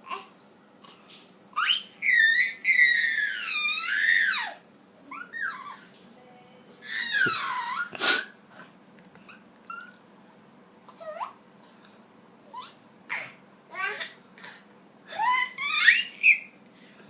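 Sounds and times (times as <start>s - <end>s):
pet animal whining: 9.2s - 10.0s.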